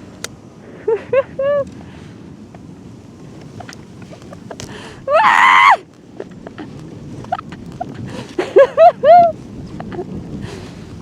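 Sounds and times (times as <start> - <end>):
wind and riding rumble: 0.0 - 11.0
person screaming excitedly: 5.1 - 5.8
person yelping: 5.1 - 5.8.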